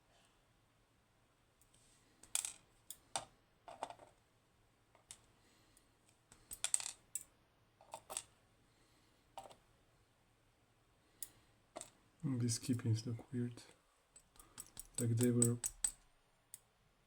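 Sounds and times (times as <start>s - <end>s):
small metal lock parts clicking: 14.2s - 16.7s.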